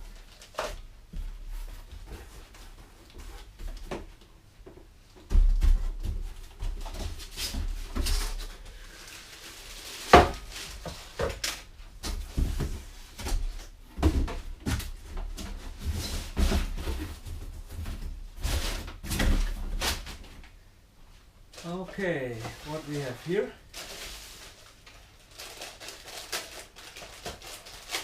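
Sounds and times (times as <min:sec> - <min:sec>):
cardboard and plastic parts handled: 0:21.6 - 0:28.0.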